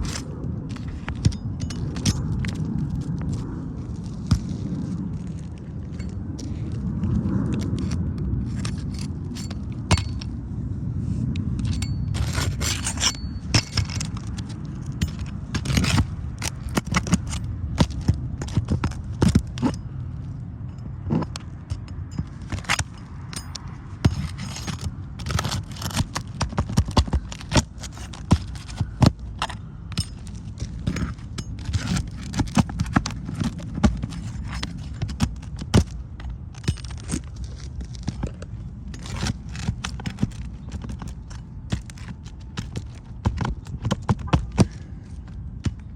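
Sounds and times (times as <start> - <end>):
roof shingles scraping and crackling: 12.2 - 19.7, 21.8 - 45.4.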